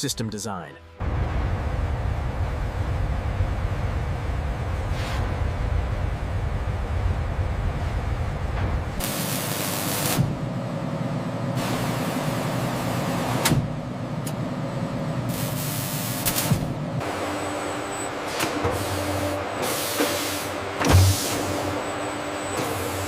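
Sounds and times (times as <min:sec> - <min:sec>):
mechanical hum: 0:01.0 - 0:23.0
machine air jets hissing: 0:09.0 - 0:10.4, 0:11.6 - 0:13.4, 0:15.3 - 0:17.4, 0:18.2 - 0:21.8.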